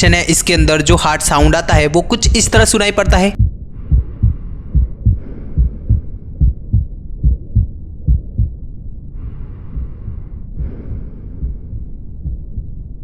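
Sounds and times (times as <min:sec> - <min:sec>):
heart murmur: 0:00.0 - 0:08.6, 0:09.2 - 0:13.0
heartbeat lub-dub: 0:00.0 - 0:08.6, 0:11.4 - 0:13.0.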